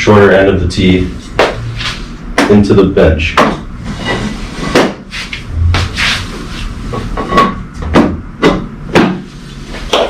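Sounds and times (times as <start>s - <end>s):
sharp knocks and clunks: 3.4s - 3.7s, 7.3s - 9.3s.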